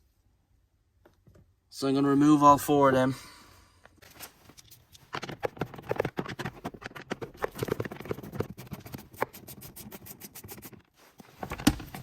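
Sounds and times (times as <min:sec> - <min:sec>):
tool scraping plastic trim: 0:05.1 - 0:10.9.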